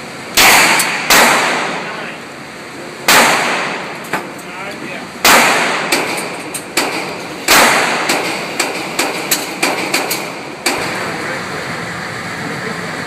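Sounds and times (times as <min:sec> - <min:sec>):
gunshots: 0:00.4 - 0:02.0, 0:03.1 - 0:04.0, 0:05.2 - 0:11.0.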